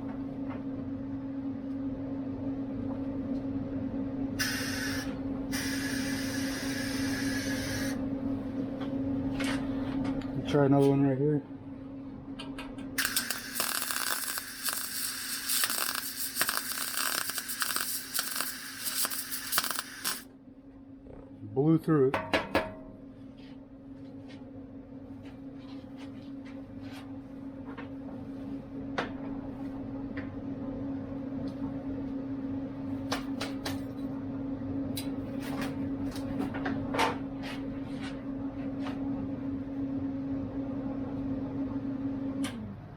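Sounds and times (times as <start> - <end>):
steady hum: 0.0 - 33.0
welding arc crackling: 4.4 - 8.0, 13.0 - 20.3.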